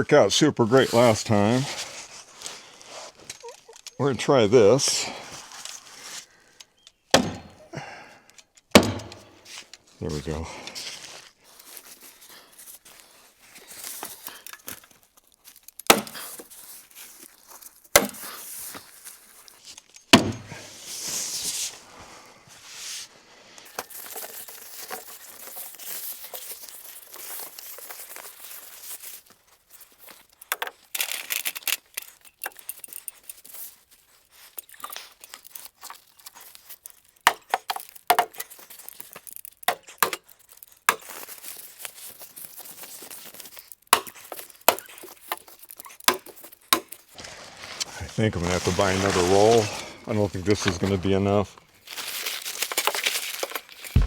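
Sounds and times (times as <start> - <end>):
house wrap rustling and crinkling: 0.0 - 7.1, 9.2 - 54.0
sharp knocks: 7.2 - 7.5, 8.8 - 9.3.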